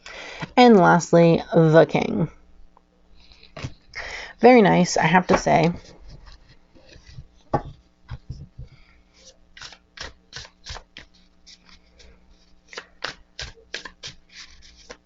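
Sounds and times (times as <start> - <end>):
cards being shuffled: 9.2 - 15.0.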